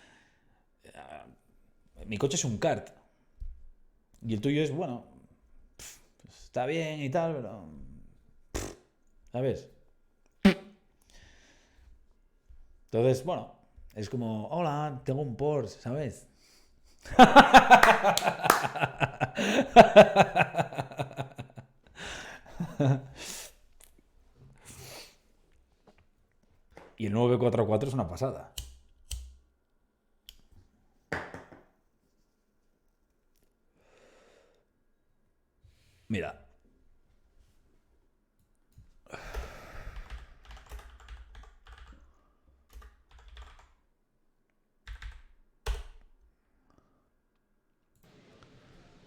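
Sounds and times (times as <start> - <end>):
man laughing: 17.1 - 23.4
breathy exhales and sighs: 39.1 - 40.4
typing on computer keyboard: 40.0 - 43.8, 44.8 - 46.0.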